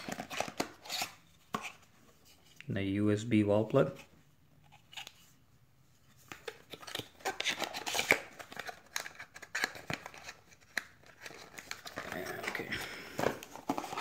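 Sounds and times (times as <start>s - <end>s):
packaging rustling and clicking: 6.2s - 14.0s.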